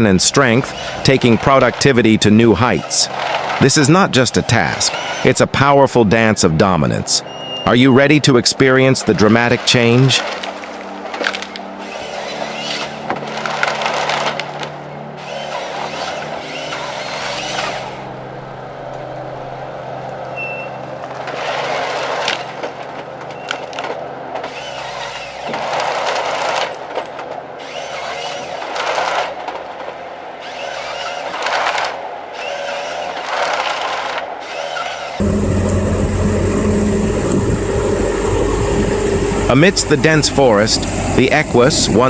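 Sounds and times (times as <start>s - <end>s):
wood cracking and splintering: 0.0s - 5.3s, 9.2s - 17.7s, 21.1s - 30.0s
diesel engine running: 35.2s - 42.0s.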